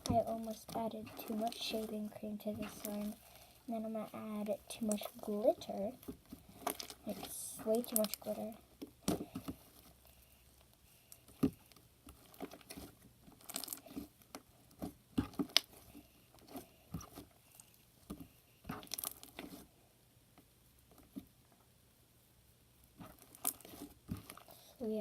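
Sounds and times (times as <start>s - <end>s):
slime squishing by hand: 0.0s - 19.8s, 22.9s - 25.0s.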